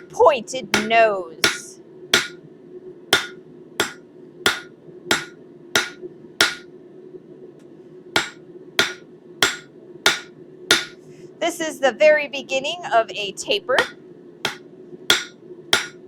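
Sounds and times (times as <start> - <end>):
hammer striking steel on anvil: 0.8 - 2.4, 3.2 - 6.7, 8.2 - 11.0, 13.8 - 16.0.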